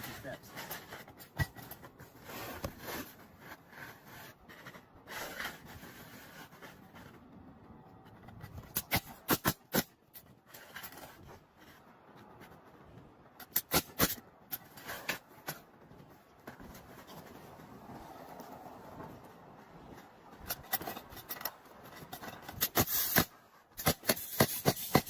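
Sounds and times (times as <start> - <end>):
hammer nailing roof shingles: 20.4 - 25.0.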